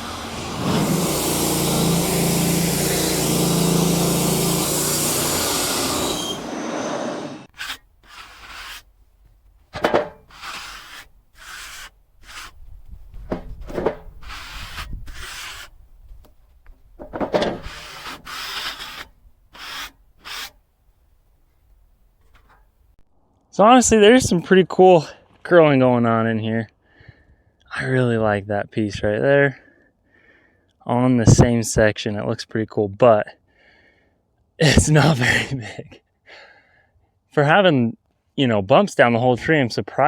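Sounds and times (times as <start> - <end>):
sawmill engine running: 0.0 - 8.8, 17.6 - 19.0
wooden boards rubbed and scraped: 0.0 - 9.0, 10.0 - 15.8, 17.0 - 20.6.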